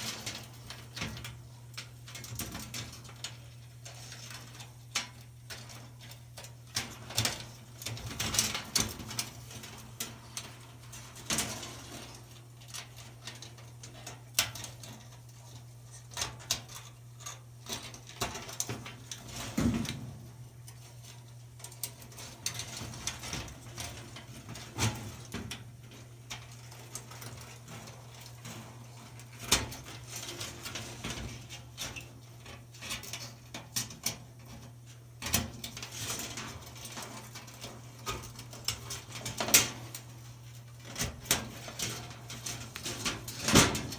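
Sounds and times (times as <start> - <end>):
wire clicking and scraping: 0.0 - 43.9.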